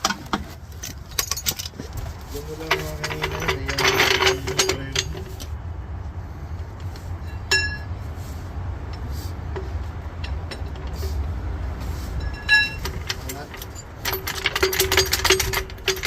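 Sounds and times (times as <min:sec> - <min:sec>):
metal tools clinking: 0:00.0 - 0:05.6, 0:12.1 - 0:16.0
steady low rumble: 0:00.0 - 0:16.0.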